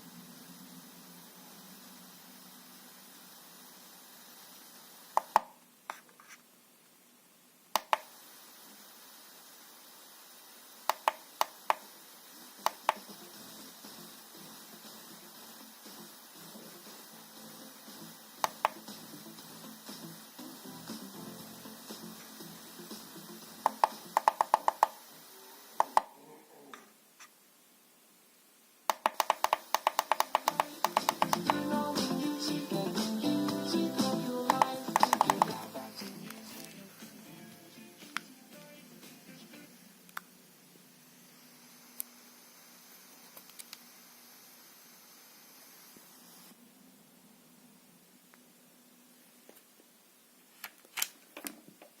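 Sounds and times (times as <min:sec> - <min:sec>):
electronic hiss: 0:00.0 - 0:06.1, 0:06.8 - 0:50.6
guitar music: 0:30.6 - 0:39.7
button clicks: 0:34.5 - 0:35.6.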